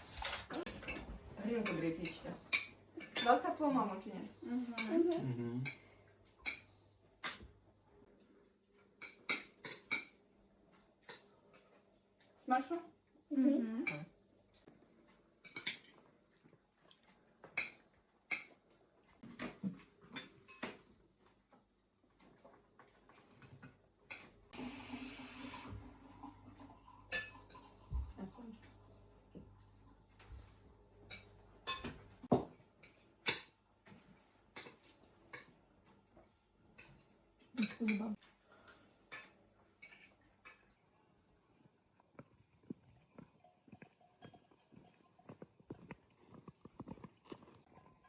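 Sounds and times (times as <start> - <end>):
spoons clinking against bowls: 0.2 - 3.6, 5.6 - 7.4, 9.0 - 10.2, 15.4 - 16.0, 27.1 - 28.8, 31.1 - 32.0, 36.8 - 40.8.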